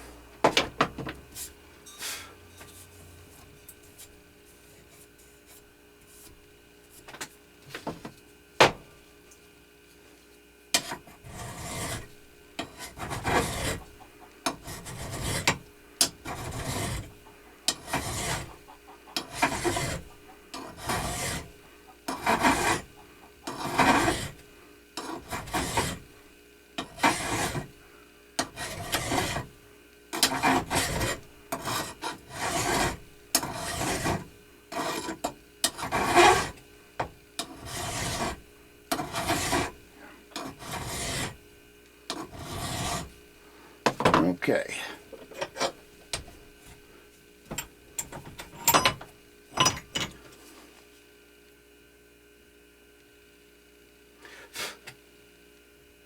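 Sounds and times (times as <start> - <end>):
hand file rasping: 10.8 - 17.1, 17.7 - 21.5, 22.1 - 24.4, 25.0 - 26.1, 26.8 - 27.7, 28.4 - 29.5, 30.2 - 36.6, 37.4 - 39.8, 40.4 - 41.4, 42.1 - 43.1.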